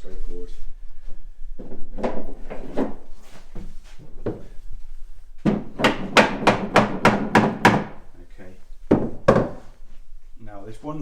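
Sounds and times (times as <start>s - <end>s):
wooden panels knocking: 3.6s - 4.6s, 5.4s - 8.1s, 8.9s - 9.8s.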